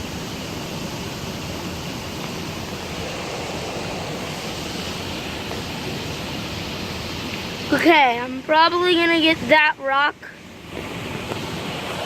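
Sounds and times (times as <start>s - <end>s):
water flowing over small waterfall: 2.5s - 8.1s.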